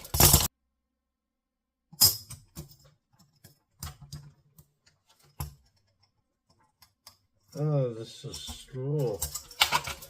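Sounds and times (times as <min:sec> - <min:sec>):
handcuffs clicking and clinking: 0:08.9 - 0:10.0.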